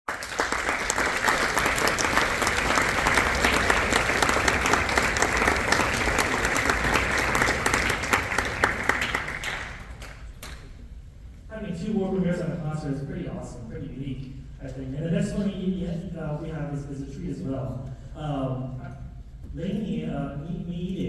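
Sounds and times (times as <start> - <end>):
audience applauding: 0.1 - 10.7.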